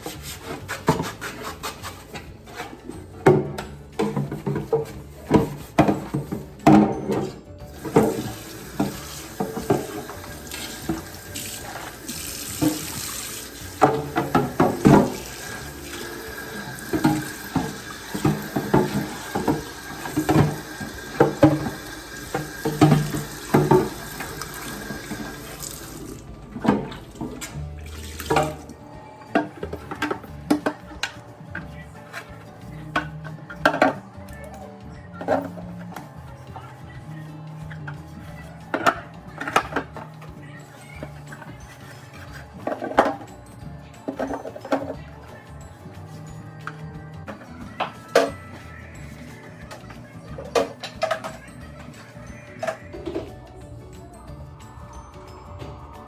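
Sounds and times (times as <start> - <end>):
dishes knocking and clattering: 0.0 - 34.1, 37.8 - 43.4, 44.0 - 45.1, 49.6 - 53.5
tap running into a sink: 7.8 - 28.7.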